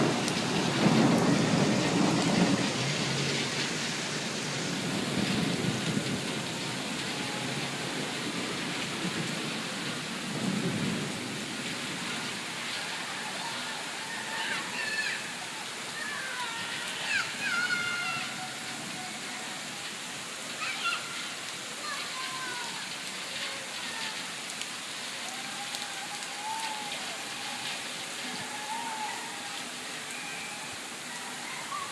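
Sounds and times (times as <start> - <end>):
heavy rain pouring: 0.0 - 31.9.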